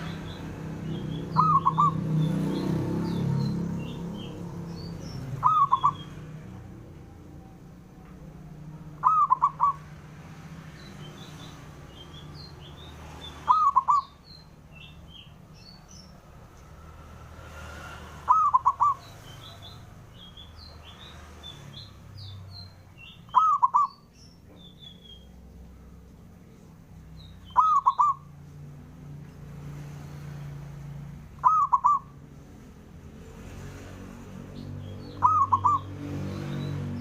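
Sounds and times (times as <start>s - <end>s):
small birds chirping: 0.0s - 37.0s
dove cooing: 1.3s - 2.0s, 5.4s - 6.1s, 8.9s - 9.9s, 13.4s - 14.1s, 18.2s - 19.5s, 23.3s - 24.0s, 27.5s - 28.3s, 31.4s - 32.2s, 35.2s - 35.9s.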